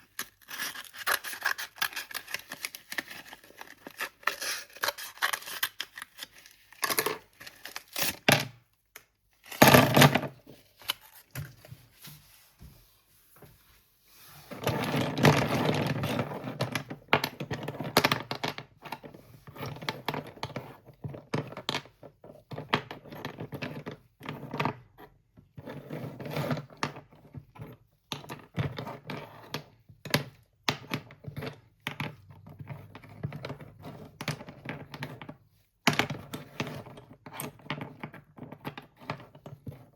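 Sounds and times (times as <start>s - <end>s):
slate pencils crunching and snapping: 0.0s - 8.3s.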